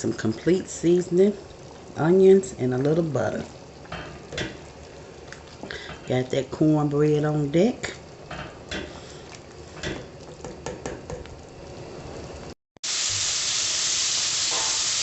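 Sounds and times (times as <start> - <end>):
food sizzling in hot oil: 12.4 - 15.0.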